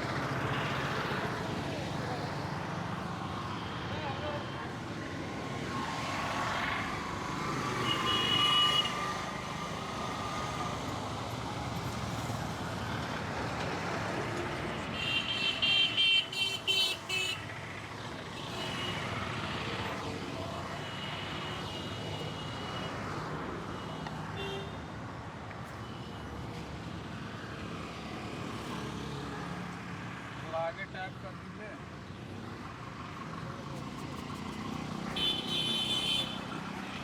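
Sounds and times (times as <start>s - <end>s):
street traffic: 0.0s - 37.0s
vehicle horns honking: 7.8s - 9.0s, 14.9s - 17.4s, 18.4s - 19.1s, 23.8s - 24.8s, 35.1s - 36.5s.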